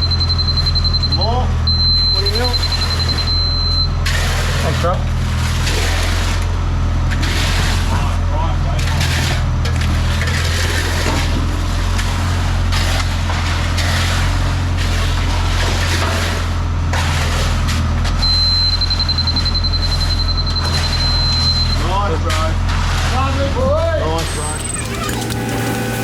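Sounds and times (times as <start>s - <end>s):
high electronic beep: 0.0s - 4.0s, 18.2s - 21.9s
diesel engine running: 0.0s - 26.0s.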